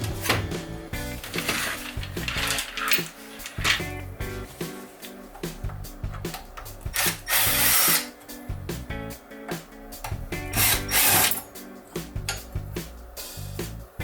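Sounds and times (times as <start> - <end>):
background music with beat: 0.0 - 14.0
power tool bursts: 6.9 - 8.1, 10.5 - 11.4.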